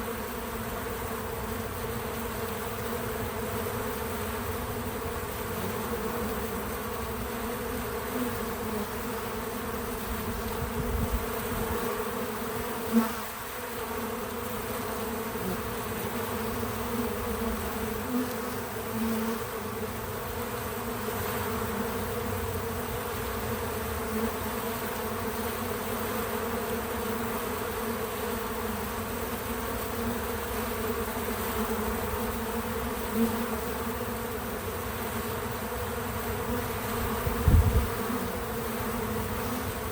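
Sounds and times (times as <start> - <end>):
bees buzzing: 0.0 - 39.9
single bee higher buzz: 0.0 - 39.9.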